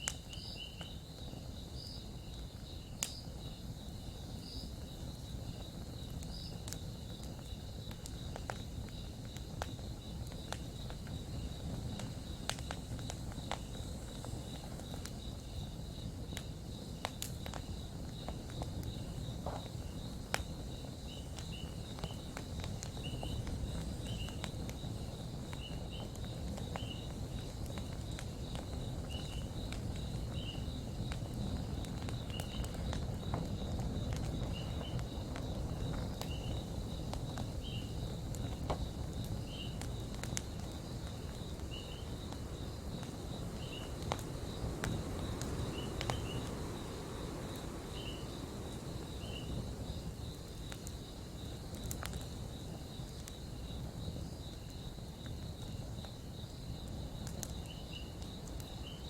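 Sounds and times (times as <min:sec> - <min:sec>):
campfire crackling and popping: 0:00.0 - 0:59.0
crickets chirping: 0:00.0 - 0:59.0.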